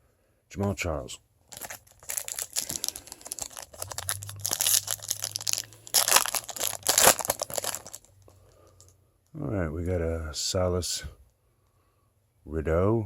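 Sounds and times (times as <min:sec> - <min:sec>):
foil wrapper crinkling and tearing: 0:01.5 - 0:08.2.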